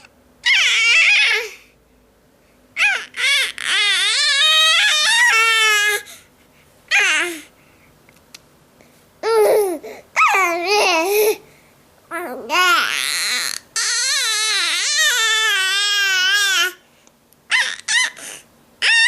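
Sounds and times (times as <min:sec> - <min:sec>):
baby babbling squeals: 0:00.4 - 0:01.6, 0:02.8 - 0:06.0, 0:09.3 - 0:11.1, 0:12.2 - 0:16.8, 0:17.5 - 0:19.0
baby wailing: 0:00.4 - 0:01.6, 0:02.8 - 0:06.1, 0:12.2 - 0:16.8, 0:17.5 - 0:19.0.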